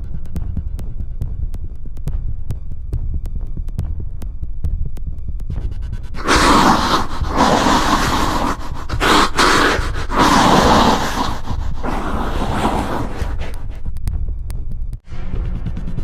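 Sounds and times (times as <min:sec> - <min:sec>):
harsh raspy noise bursts: 0:06.2 - 0:13.8.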